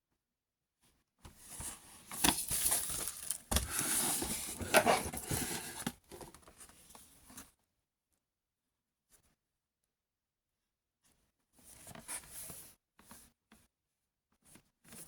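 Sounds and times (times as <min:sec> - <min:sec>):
cardboard rustling: 0:01.4 - 0:06.5
plastic packaging crinkling: 0:02.1 - 0:05.9.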